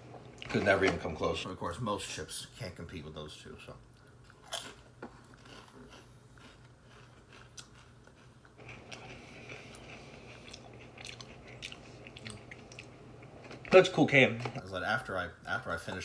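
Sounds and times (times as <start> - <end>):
crackly chewing: 3.8 - 14.8
crisps crunching: 4.2 - 14.8.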